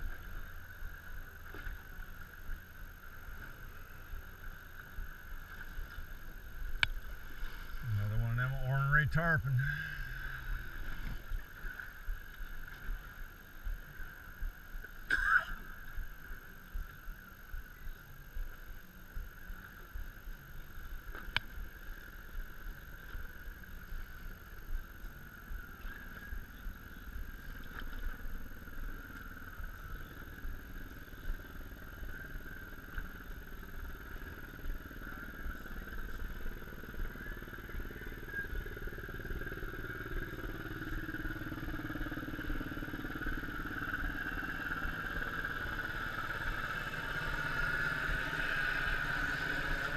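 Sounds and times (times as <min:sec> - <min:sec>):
boat engine idling: 0:00.0 - 0:49.9
thin steady whine: 0:00.0 - 0:49.9.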